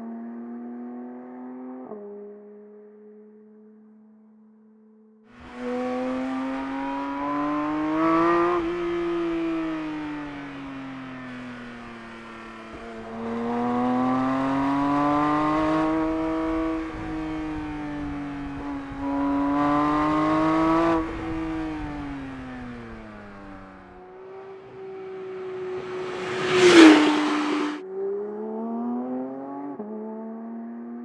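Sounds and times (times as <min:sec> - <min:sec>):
sports car engine accelerating: 0:05.4 - 0:27.8.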